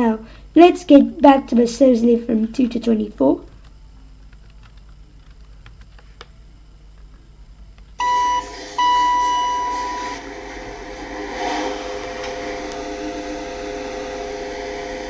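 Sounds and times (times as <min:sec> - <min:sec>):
lift chime: 0:08.0 - 0:10.2
lift humming: 0:08.0 - 0:15.0.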